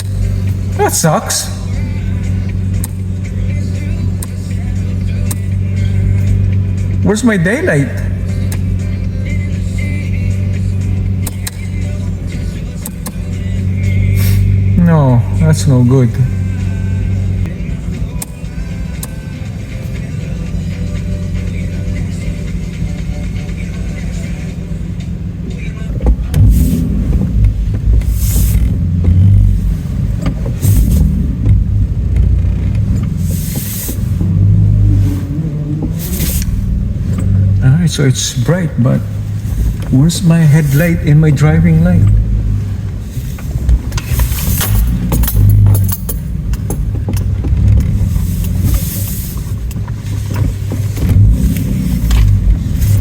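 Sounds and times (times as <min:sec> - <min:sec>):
truck engine and road rumble: 0:00.0 - 0:53.0
short hissing whooshes: 0:28.0 - 0:28.8, 0:33.2 - 0:36.8.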